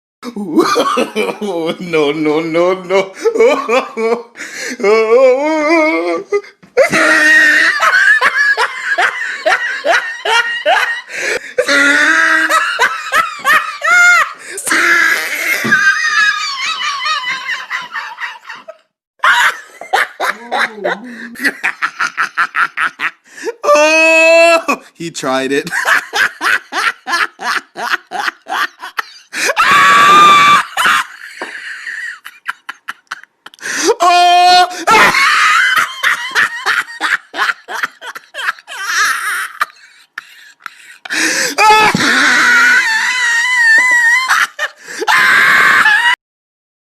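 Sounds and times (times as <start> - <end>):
person laughing: 2.9 - 24.8, 25.7 - 46.2
high-pitched scream: 29.6 - 31.0.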